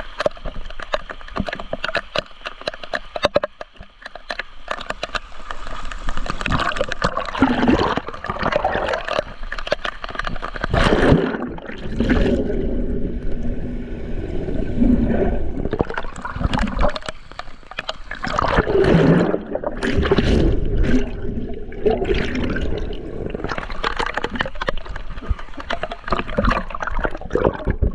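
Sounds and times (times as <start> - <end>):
water splashing from swimming: 0.0 - 27.9.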